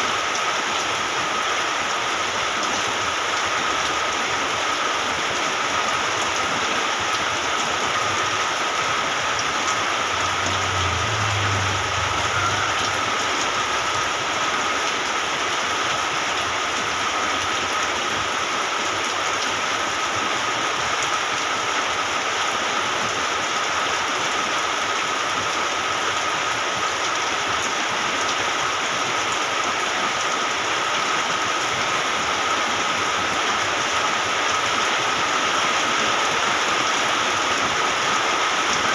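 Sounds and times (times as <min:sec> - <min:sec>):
steady rain falling: 0:00.0 - 0:38.9
thin high tone: 0:09.7 - 0:14.2.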